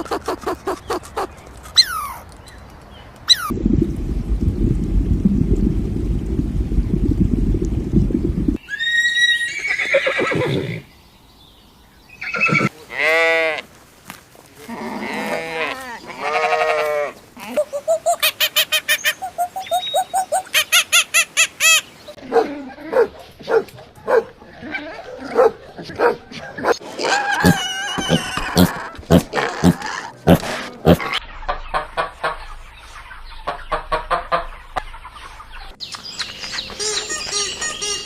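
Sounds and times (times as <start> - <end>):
low rumbling noise: 3.5 - 8.6.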